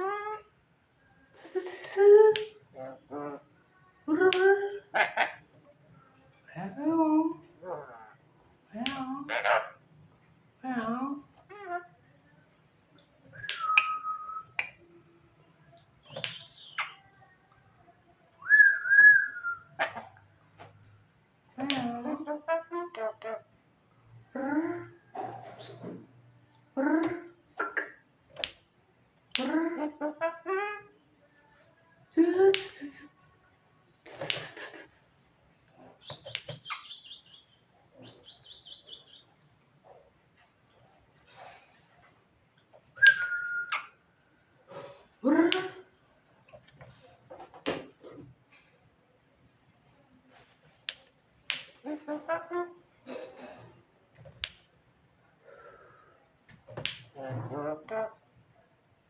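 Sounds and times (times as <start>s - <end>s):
bird whistling and clicking: 13.3s - 14.7s, 36.0s - 37.5s, 43.0s - 44.0s
bird high repeated chirps: 36.0s - 39.3s.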